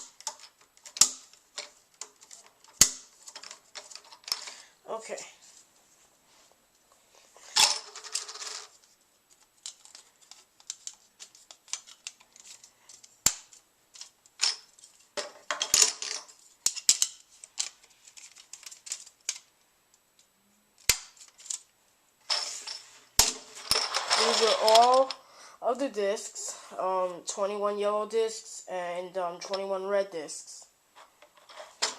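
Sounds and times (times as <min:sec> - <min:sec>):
plastic game pieces clicking: 0:24.0 - 0:25.2.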